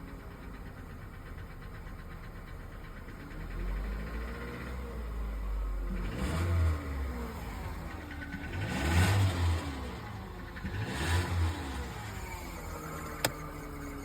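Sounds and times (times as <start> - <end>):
car engine revving with knock: 3.0 - 14.0.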